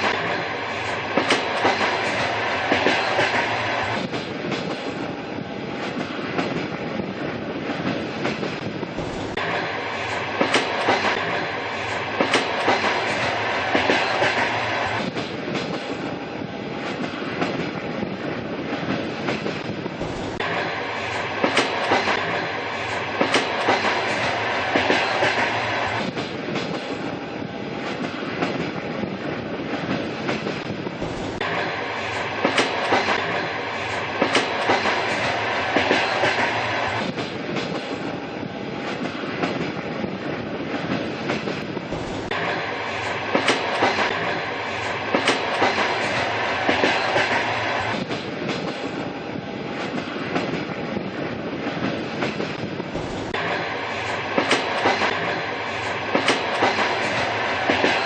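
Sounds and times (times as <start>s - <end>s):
train rumble: 0.0s - 58.0s
train wheels clickety-clack: 0.0s - 58.0s.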